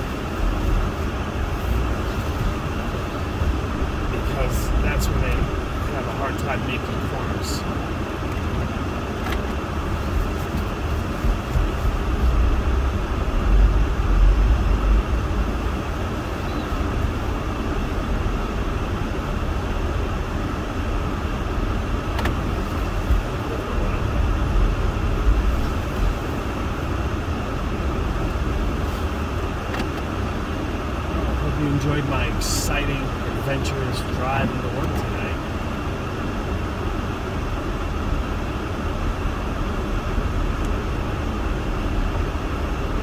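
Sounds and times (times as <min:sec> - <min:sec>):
low rumble: 0:00.0 - 0:06.4, 0:09.7 - 0:29.6
van engine running: 0:00.0 - 0:43.0.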